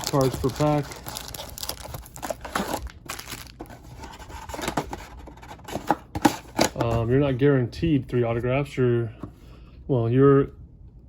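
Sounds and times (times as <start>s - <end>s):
plastic wrapping crinkling and tearing: 0.0s - 5.0s.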